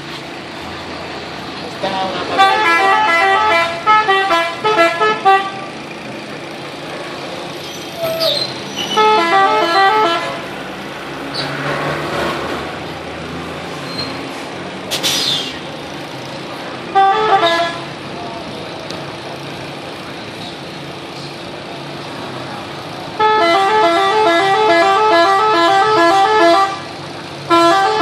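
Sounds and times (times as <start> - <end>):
musical air horn tune: 8.9 - 10.4, 23.2 - 26.8.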